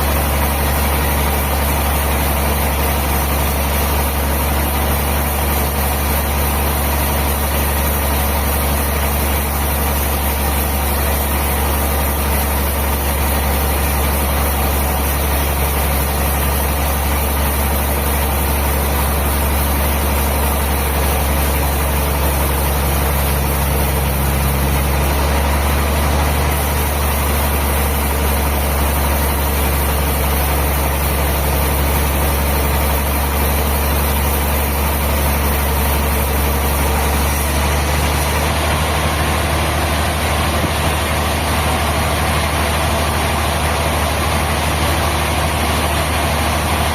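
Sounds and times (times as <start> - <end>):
sawmill machinery humming: 0.0 - 46.9.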